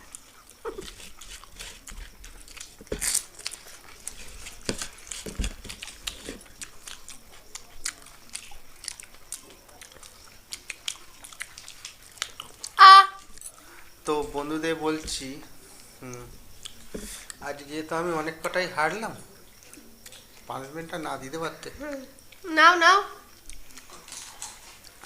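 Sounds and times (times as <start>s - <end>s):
crunching and chewing crisp food: 0.0s - 22.4s, 23.1s - 25.0s.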